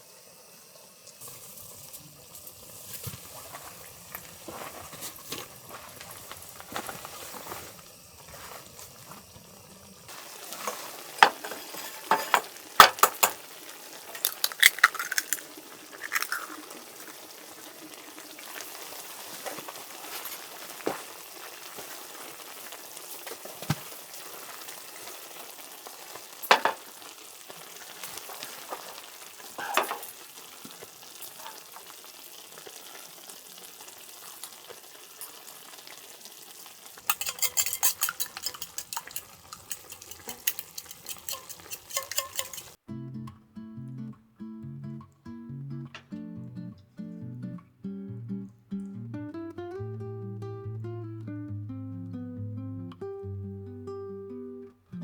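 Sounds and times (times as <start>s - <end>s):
food sizzling in a pan: 0.0s - 42.8s
utensils clinking against pan: 10.4s - 17.1s, 26.5s - 26.8s, 29.6s - 30.2s, 37.0s - 42.8s.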